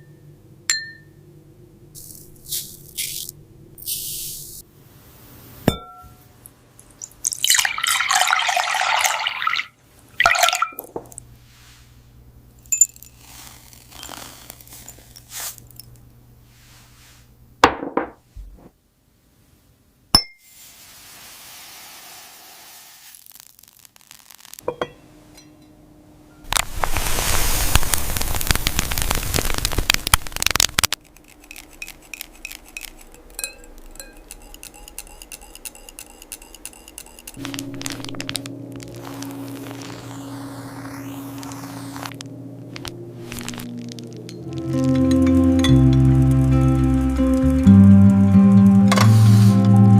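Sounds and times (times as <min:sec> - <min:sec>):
glass clinks: 0:00.7 - 0:01.2, 0:05.7 - 0:06.2, 0:24.6 - 0:26.5, 0:33.4 - 0:34.9
crackling crunch: 0:13.0 - 0:15.8, 0:23.2 - 0:24.6, 0:26.5 - 0:47.5.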